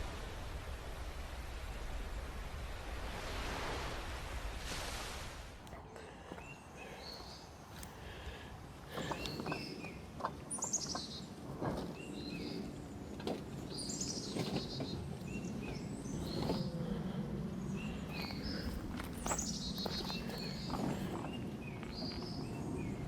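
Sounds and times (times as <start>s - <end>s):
songbirds chirping and singing: 5.8s - 23.0s.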